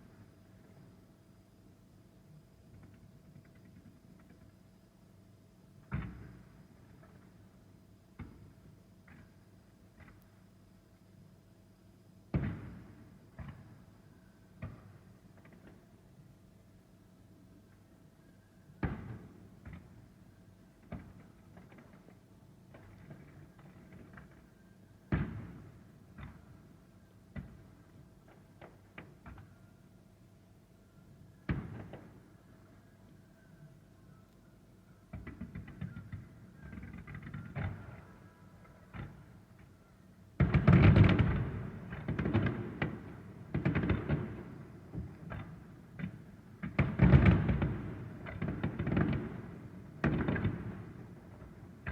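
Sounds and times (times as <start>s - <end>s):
fireworks pops and crackles: 2.6s - 4.6s, 5.8s - 10.4s, 12.3s - 14.0s, 14.6s - 16.0s, 18.8s - 20.1s, 20.8s - 26.7s, 27.3s - 29.6s, 31.4s - 32.3s, 35.1s - 38.2s, 38.8s - 39.7s, 40.4s - 51.9s
fireworks bangs: 12.3s - 13.8s, 25.1s - 26.6s, 31.5s - 32.2s, 35.1s - 38.1s, 40.4s - 51.9s.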